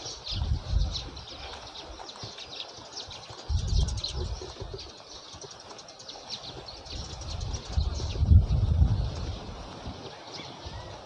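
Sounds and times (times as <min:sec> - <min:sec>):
small birds chirping: 0:00.0 - 0:11.0.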